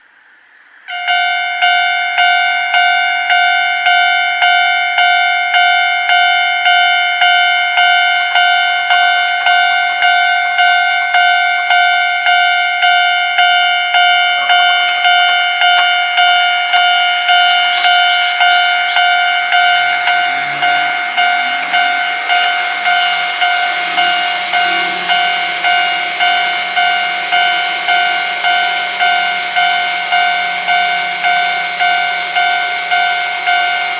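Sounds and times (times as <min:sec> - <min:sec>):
train running noise: 0:00.0 - 0:33.9
level crossing bell dinging: 0:00.9 - 0:33.9
high squeals: 0:16.9 - 0:33.9.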